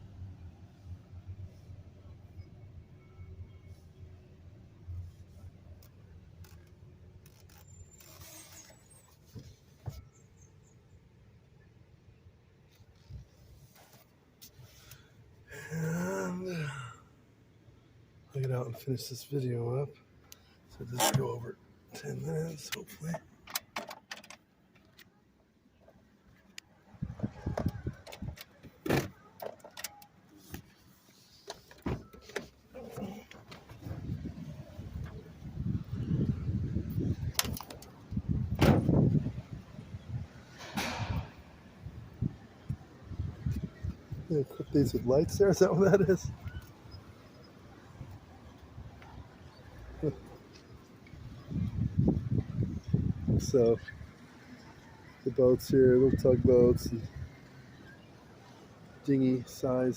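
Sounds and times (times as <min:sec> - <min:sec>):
recording device handling noise: 0:25.8 - 0:39.6
car door closing: 0:31.5 - 0:34.2, 0:38.5 - 0:39.2
car door latch clicking: 0:38.5 - 0:39.0.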